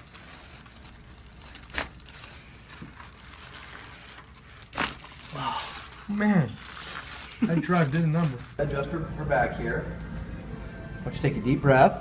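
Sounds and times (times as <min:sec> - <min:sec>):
rustling and crinkling: 0:00.0 - 0:08.6.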